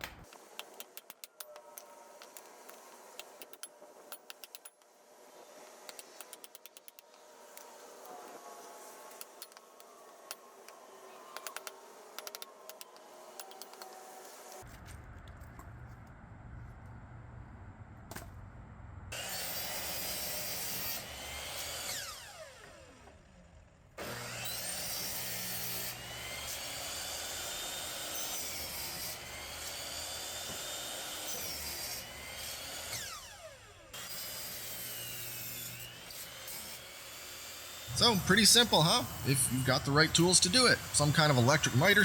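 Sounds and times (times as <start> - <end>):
miter saw cutting wood: 0.1 - 14.6, 19.1 - 42.0
saw blade spinning down: 37.8 - 42.0.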